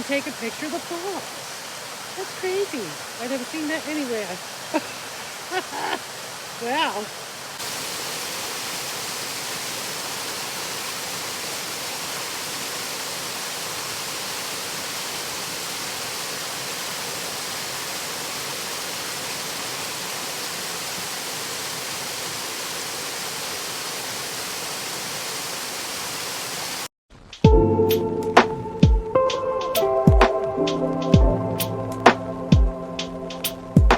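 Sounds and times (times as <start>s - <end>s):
waterfall rushing: 0.0s - 26.9s.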